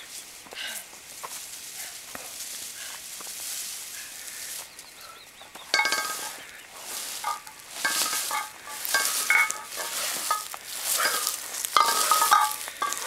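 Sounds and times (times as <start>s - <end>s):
heavy weight scraping along ground: 5.8s - 13.0s.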